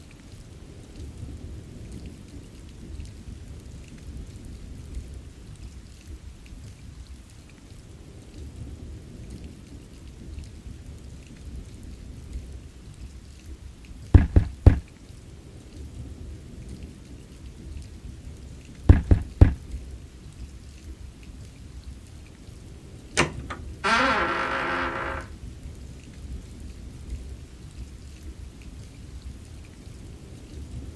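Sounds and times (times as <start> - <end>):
rain: 0.0 - 30.9
thunder rumbling: 14.1 - 14.9, 18.8 - 19.9
loud sharp knocks: 14.2 - 14.8, 18.9 - 19.6.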